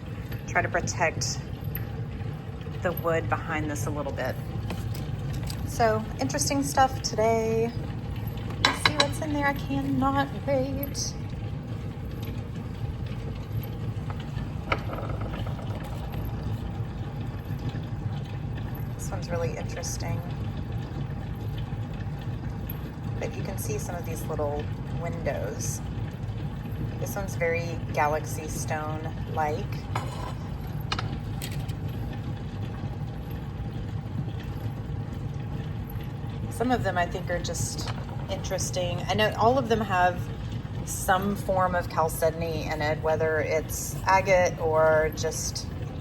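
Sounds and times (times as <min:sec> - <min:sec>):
low machine hum: 0:00.0 - 0:46.0.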